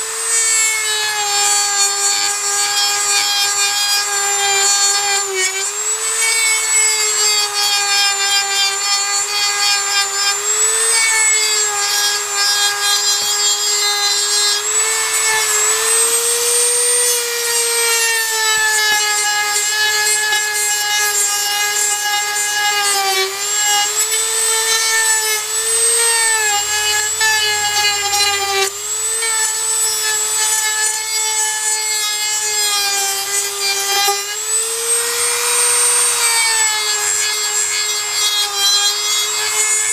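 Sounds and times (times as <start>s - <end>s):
power tool whining: 0.0s - 39.9s.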